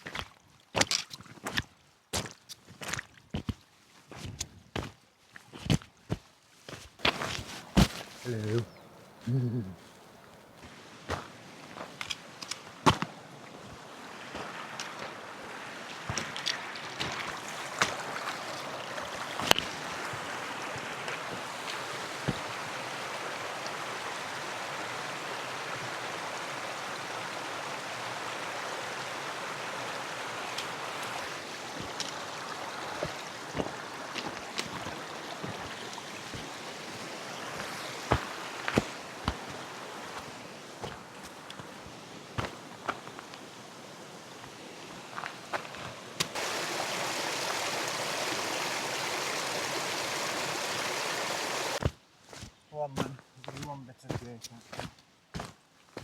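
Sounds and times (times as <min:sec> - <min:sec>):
knocks and footsteps: 0:05.6 - 0:08.3
running water: 0:07.0 - 0:51.8.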